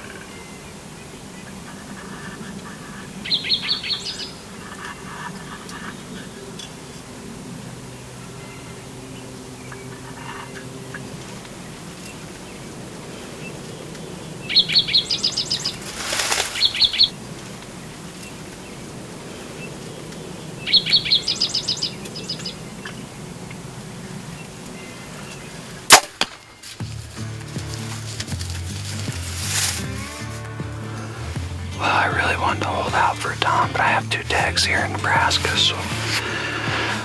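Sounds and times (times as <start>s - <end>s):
bow shot crack: 25.9s - 26.5s.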